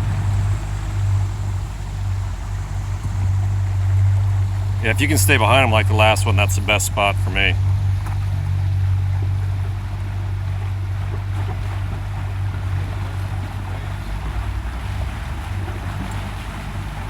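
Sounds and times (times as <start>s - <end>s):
wind buffeting microphone: 0.0s - 6.4s
motorboat engine droning: 0.0s - 17.0s
water rushing past hull: 0.0s - 17.0s.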